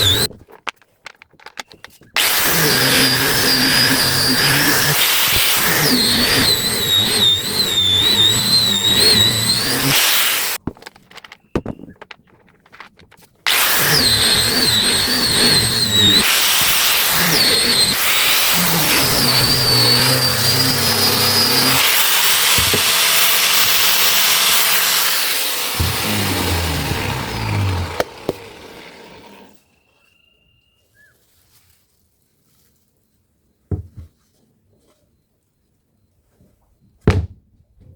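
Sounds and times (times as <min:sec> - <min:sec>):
power tool whining on wood: 0:00.0 - 0:00.4, 0:02.2 - 0:10.6, 0:13.5 - 0:29.7.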